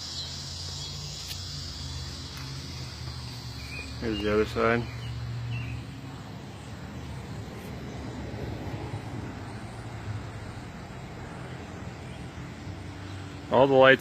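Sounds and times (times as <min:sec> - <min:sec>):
distant road traffic rumble: 0:00.0 - 0:14.0.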